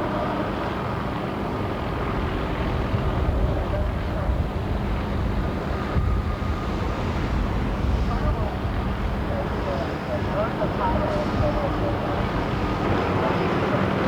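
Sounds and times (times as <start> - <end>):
helicopter engine and rotor drone: 0.0 - 14.0.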